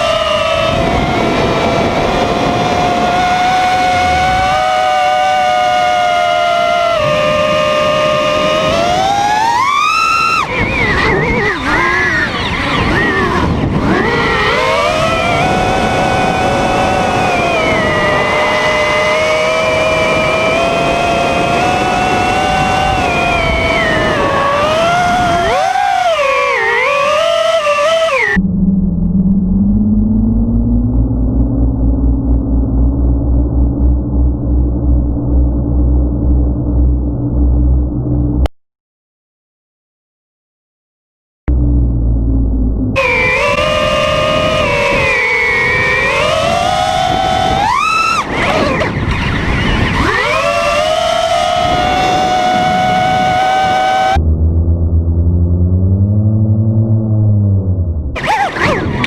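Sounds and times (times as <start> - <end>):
quadcopter motors whining: 0.0 - 32.2, 43.0 - 54.2, 58.2 - 59.0
low pulsing rumble: 28.2 - 38.5, 41.5 - 59.0.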